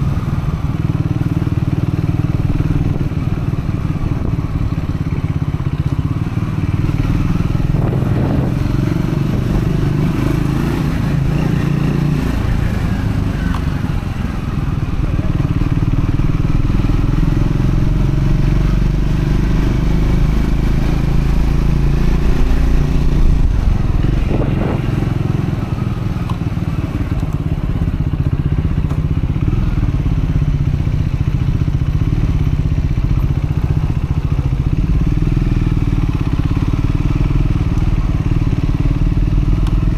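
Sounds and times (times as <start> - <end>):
motorcycle engine running: 0.0 - 39.9.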